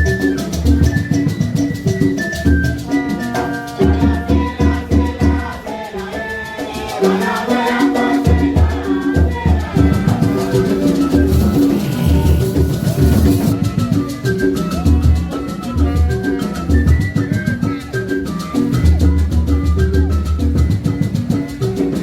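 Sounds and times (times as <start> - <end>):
background music with beat: 8.3 - 15.0.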